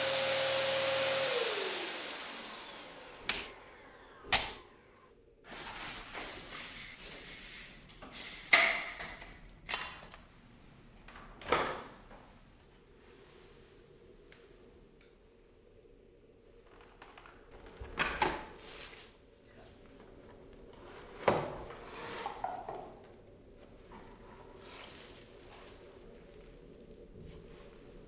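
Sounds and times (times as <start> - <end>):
vacuum cleaner motor running: 0.0 - 5.0.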